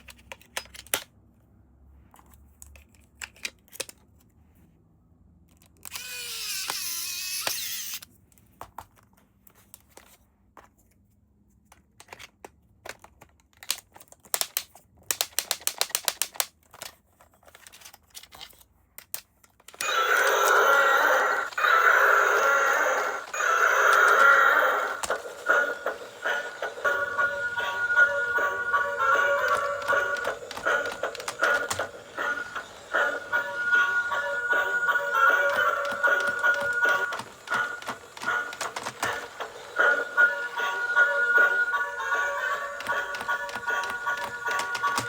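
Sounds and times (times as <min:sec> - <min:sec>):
packaging clicks and snaps: 0:12.0 - 0:20.6, 0:23.2 - 0:25.5, 0:28.7 - 0:32.9, 0:35.3 - 0:39.7, 0:42.8 - 0:45.0
electronic toy tones: 0:19.8 - 0:45.0.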